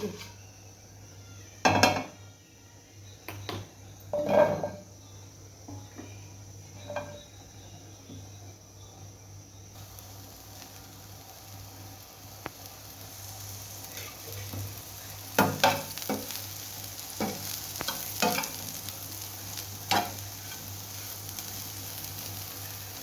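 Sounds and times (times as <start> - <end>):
food sizzling in oil: 9.7 - 23.0.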